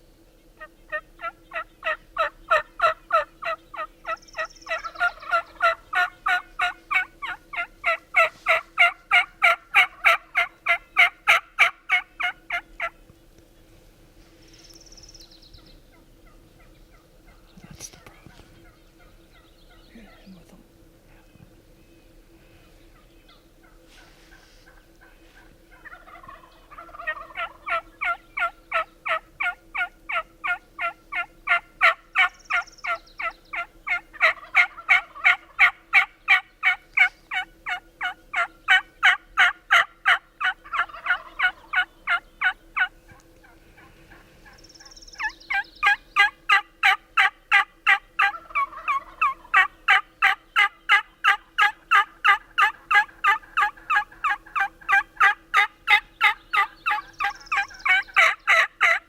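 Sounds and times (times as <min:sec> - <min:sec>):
turkey yelping: 0:00.9 - 0:13.0, 0:25.7 - 0:59.0.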